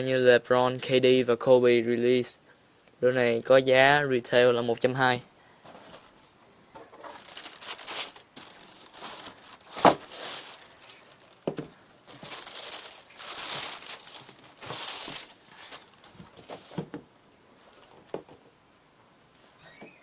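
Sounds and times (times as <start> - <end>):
paper crinkling and rustling: 5.6 - 17.0.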